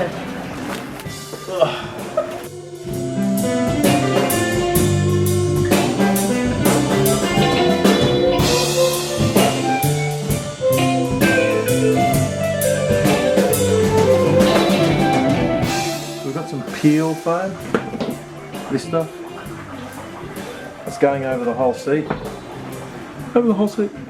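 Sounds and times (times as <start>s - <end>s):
upbeat band music: 0.0s - 24.0s.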